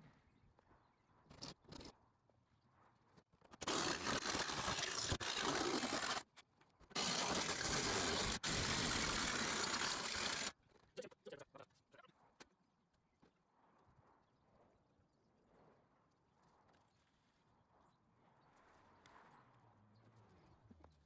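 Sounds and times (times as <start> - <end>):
jigsaw cutting sheet metal: 3.5 - 6.3, 6.9 - 10.6.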